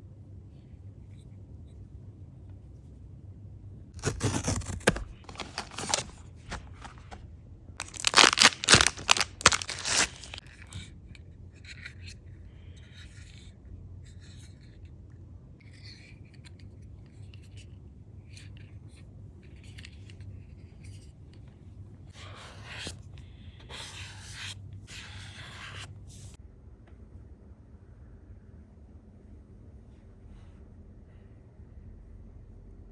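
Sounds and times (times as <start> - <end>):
packaging tearing and crinkling: 4.0 - 7.2, 7.8 - 10.4
soft rustling of package: 4.0 - 7.2, 7.8 - 11.7.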